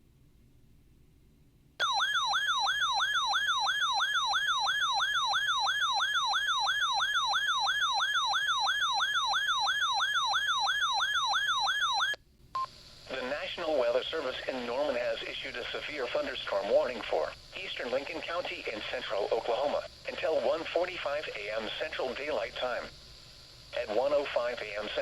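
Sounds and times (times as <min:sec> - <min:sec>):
electronic warbling siren: 0:01.8 - 0:12.2.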